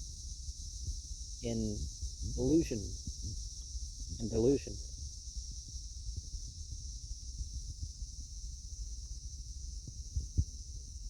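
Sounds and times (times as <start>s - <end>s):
steady high hiss: 1.4s - 5.2s.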